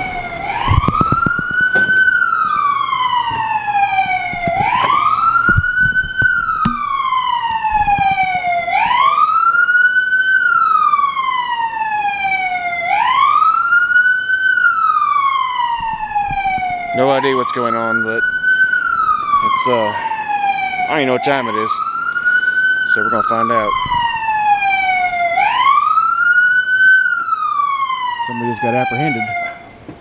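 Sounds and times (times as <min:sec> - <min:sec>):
police siren wailing: 0:00.0 - 0:29.9.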